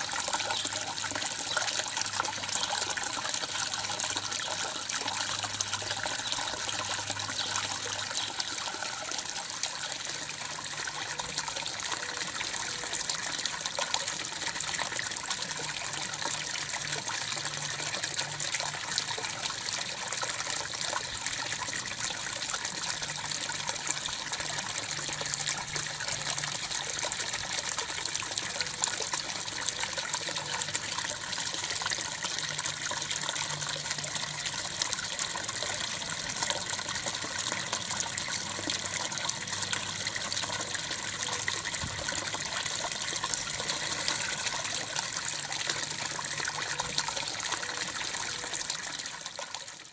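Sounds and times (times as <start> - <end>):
water trickling and splashing: 0.0 - 49.9.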